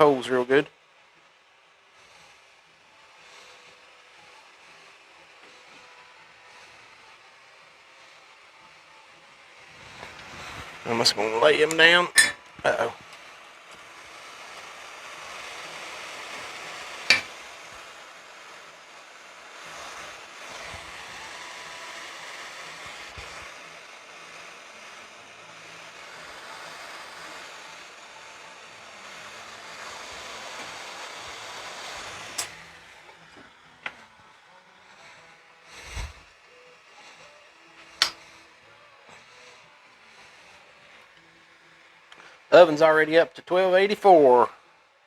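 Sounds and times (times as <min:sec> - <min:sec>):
sharp click: 0:17.1 - 0:17.4, 0:38.0 - 0:38.2
steady rushing blowing noise: 0:26.0 - 0:41.8.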